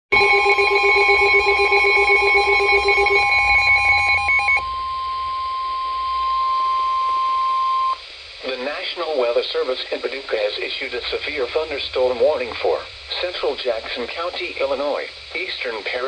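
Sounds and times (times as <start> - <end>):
steady high alarm tone: 0.0 - 8.1, 10.6 - 15.8
fast pulsing electronic beeping: 0.1 - 7.4, 10.3 - 16.0.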